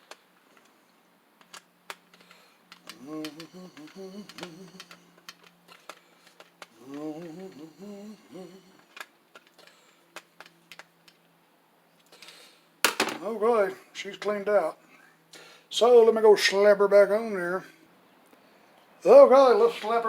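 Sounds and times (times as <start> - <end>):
man humming: 2.8 - 5.2, 6.7 - 9.0.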